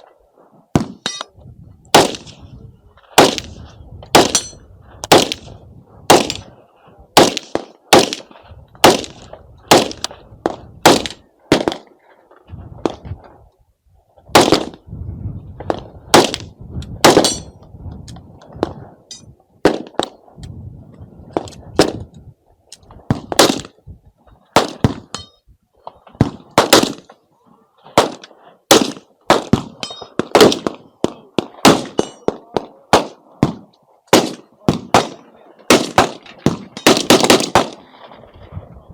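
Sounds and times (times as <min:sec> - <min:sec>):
gunshots: 0:00.8 - 0:01.2, 0:01.9 - 0:02.4, 0:03.2 - 0:06.5, 0:07.2 - 0:11.9, 0:14.3 - 0:14.8, 0:15.7 - 0:17.5, 0:23.1 - 0:23.8, 0:24.6 - 0:25.2, 0:26.2 - 0:27.1, 0:28.0 - 0:37.9.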